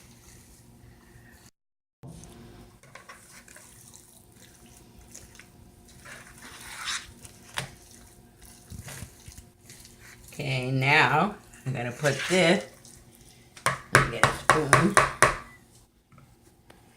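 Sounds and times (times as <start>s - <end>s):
spoon stirring thick batter: 2.2s - 15.6s.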